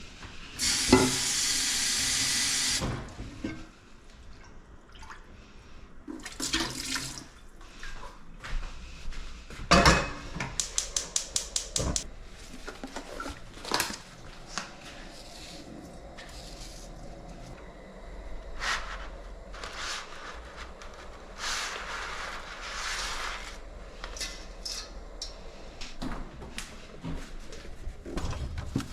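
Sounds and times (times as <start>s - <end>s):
kitchen tap running: 0.6s - 2.8s, 10.6s - 12.1s.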